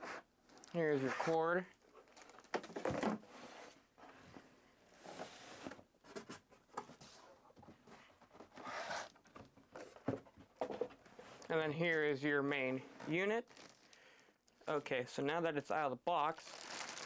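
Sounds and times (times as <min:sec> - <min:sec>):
packaging rustling and scraping: 0:00.0 - 0:11.5, 0:12.9 - 0:13.9, 0:16.4 - 0:17.0.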